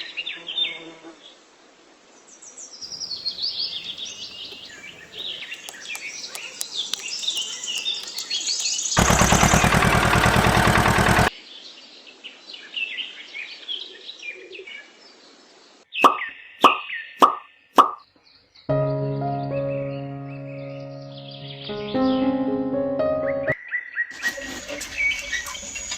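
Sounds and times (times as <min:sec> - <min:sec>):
small birds chirping: 0:02.8 - 0:11.8, 0:16.0 - 0:18.7, 0:19.7 - 0:22.3
loud rapid mechanical rattle: 0:09.0 - 0:11.3.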